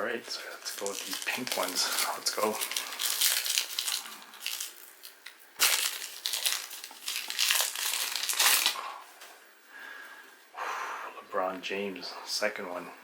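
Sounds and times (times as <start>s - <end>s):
plastic wrapping crinkling: 0.0s - 8.9s.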